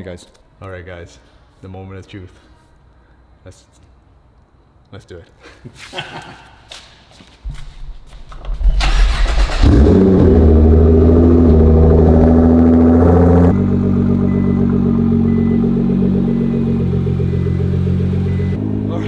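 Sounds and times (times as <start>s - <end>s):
car engine starting and idling: 8.1s - 19.0s.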